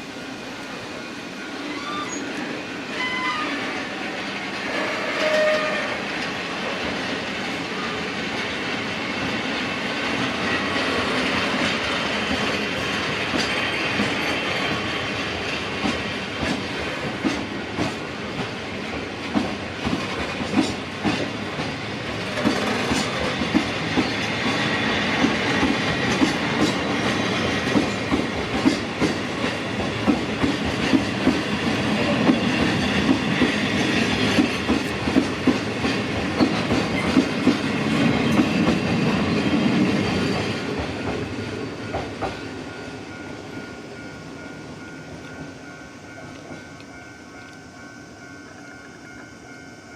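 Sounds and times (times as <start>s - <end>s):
train wheels rumbling on rail: 0.0s - 49.9s
wheels clacking over rail joints: 8.2s - 42.6s.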